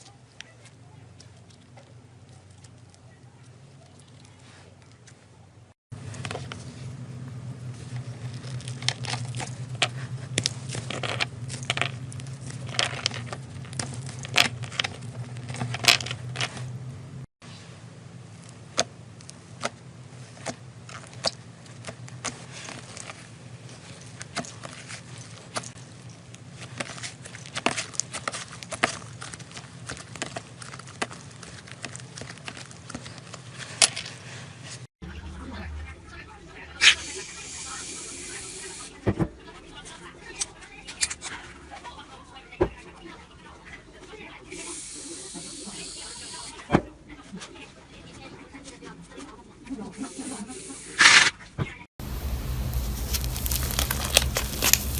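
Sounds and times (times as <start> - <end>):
slime crackling pops: 52.1 - 54.9.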